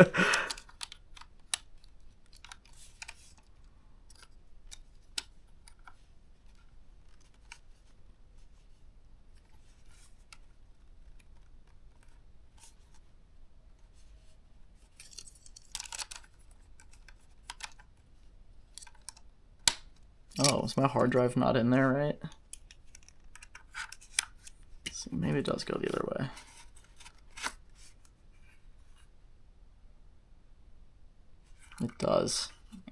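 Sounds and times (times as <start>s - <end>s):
plastic laptop parts clicking: 0.0s - 8.0s, 14.9s - 20.7s, 22.3s - 24.6s.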